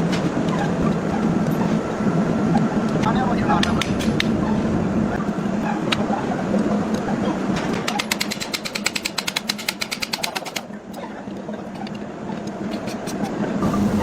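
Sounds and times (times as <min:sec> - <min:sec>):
workshop machinery humming: 0:13.4 - 0:14.0.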